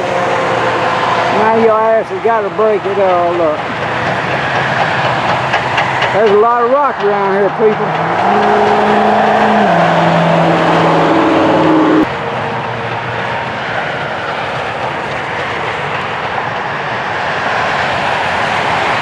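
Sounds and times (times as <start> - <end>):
rushing traffic or wind noise: 0.0 - 19.0
vehicle engine running: 7.1 - 12.1.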